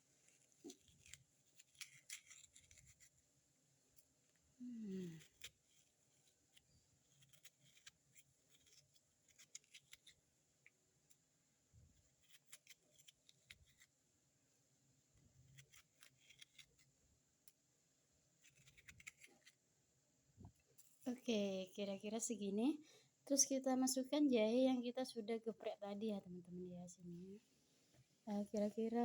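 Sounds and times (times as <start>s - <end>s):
utensil scraping pear: 0.2s - 3.2s, 5.1s - 10.2s.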